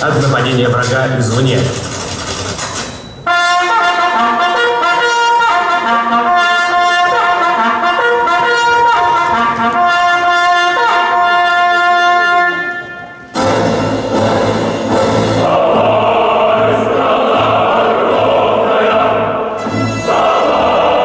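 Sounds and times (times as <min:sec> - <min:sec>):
solo trumpet melody: 0:03.3 - 0:15.3, 0:19.6 - 0:20.5.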